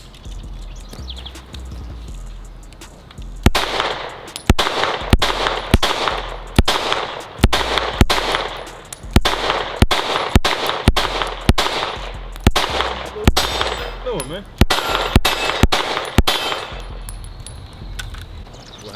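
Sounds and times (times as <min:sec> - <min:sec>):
pistol shots with echo: 0:03.4 - 0:17.6.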